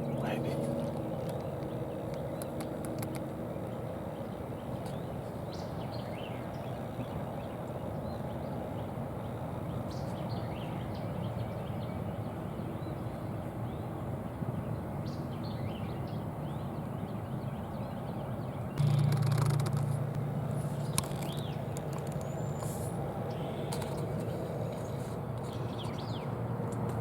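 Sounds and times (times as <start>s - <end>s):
low outdoor rumble: 18.7s - 27.0s
songbird chirps: 20.6s - 26.4s.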